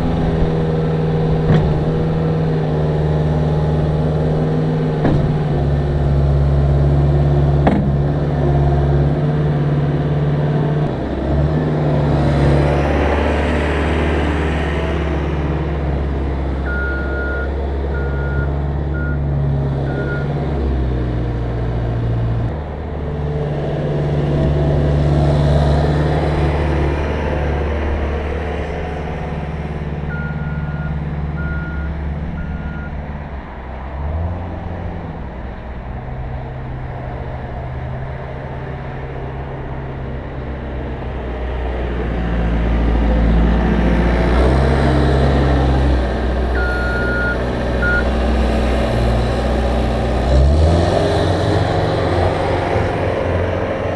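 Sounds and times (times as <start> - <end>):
diesel engine under load: 0.0 - 53.9.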